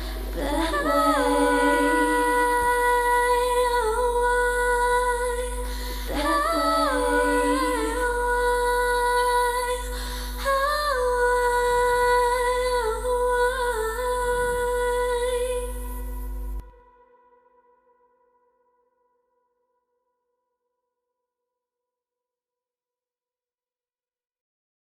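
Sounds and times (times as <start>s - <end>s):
women humming harmonies: 0.0s - 16.0s.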